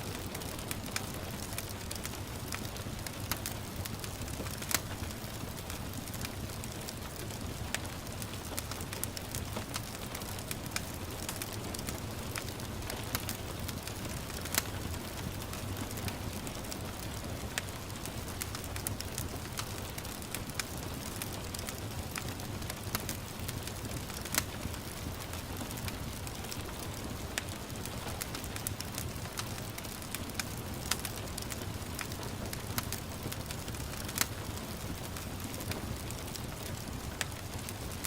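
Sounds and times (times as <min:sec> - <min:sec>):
gentle rain hiss: 0:00.0 - 0:38.0
wood fire crackling: 0:00.0 - 0:38.0.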